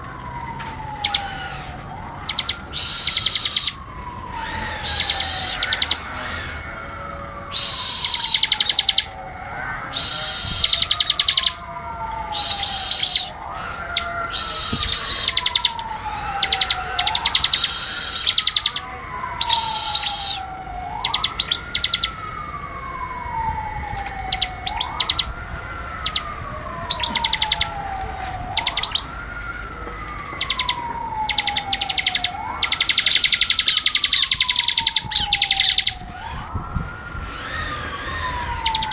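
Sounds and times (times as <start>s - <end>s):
bird chirping rapidly: 1.0s - 6.6s, 7.6s - 9.1s, 10.0s - 11.6s, 12.4s - 13.3s, 14.0s - 15.8s, 16.4s - 18.8s, 19.4s - 20.4s, 21.0s - 22.2s, 24.3s - 25.4s, 26.0s - 26.3s, 26.9s - 27.7s, 28.5s - 29.2s, 30.4s - 36.3s, 38.2s - 38.9s
falling whistle-like tone: 2.4s - 3.8s, 7.5s - 9.1s, 9.9s - 11.6s, 12.3s - 13.4s, 14.3s - 15.8s, 16.4s - 18.8s, 19.4s - 22.1s.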